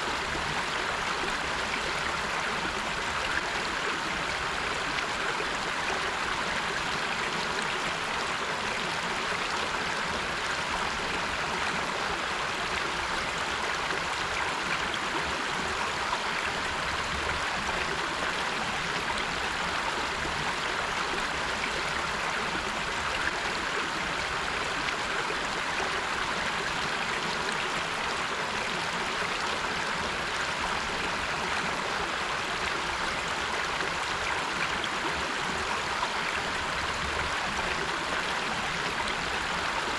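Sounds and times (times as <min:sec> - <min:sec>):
river water over rocks: 0:00.0 - 0:39.9.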